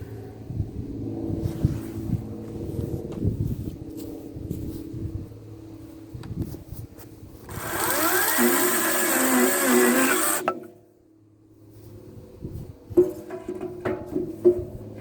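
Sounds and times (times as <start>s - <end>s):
chainsaw cutting a branch: 7.5s - 10.6s.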